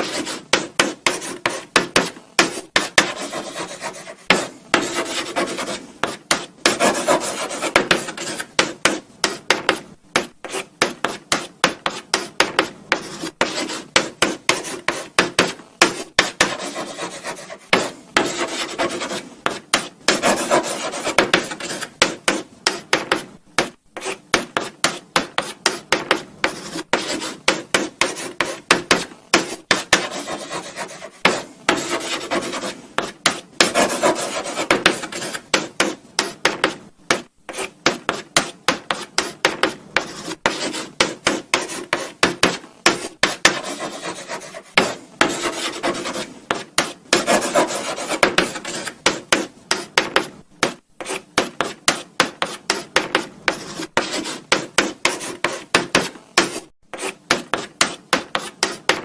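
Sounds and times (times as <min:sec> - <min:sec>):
chalk writing on blackboard: 0:00.0 - 0:59.0.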